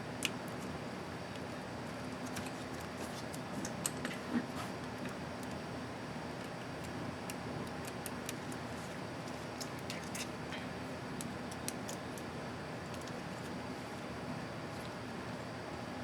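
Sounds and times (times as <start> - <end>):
steady background hum: 0.0 - 16.0.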